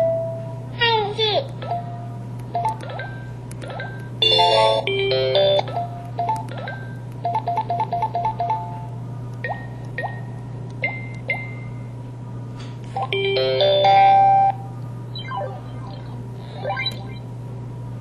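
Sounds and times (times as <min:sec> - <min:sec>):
multi-note phone jingle: 0:04.2 - 0:05.7.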